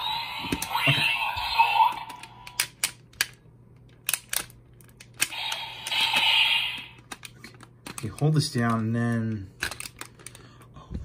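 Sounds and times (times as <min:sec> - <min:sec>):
plastic toy parts clicking: 0:02.1 - 0:06.3, 0:07.0 - 0:10.4
tinny electronic toy sound: 0:05.3 - 0:07.0.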